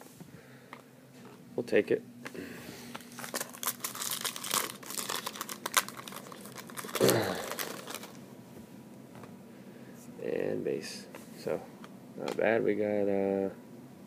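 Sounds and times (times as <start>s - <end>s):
foil wrapper crinkling and tearing: 2.9s - 8.2s.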